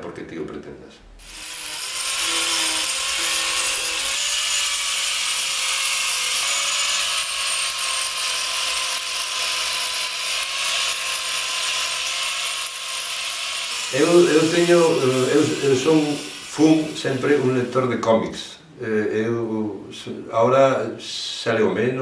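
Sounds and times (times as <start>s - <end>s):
power tool carving wood: 1.2s - 18.0s.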